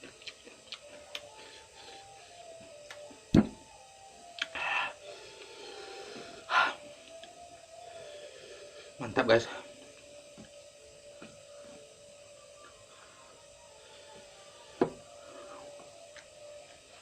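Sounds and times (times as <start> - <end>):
faint tune: 0.0 - 17.0.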